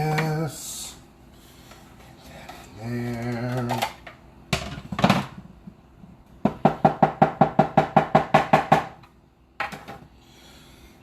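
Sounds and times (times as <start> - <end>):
utensil knocking on hard surface: 6.4 - 8.9.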